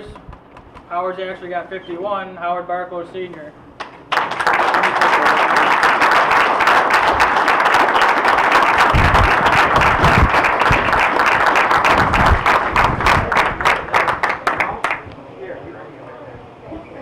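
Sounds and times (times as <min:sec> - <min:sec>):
crowd clapping: 0:03.8 - 0:15.2.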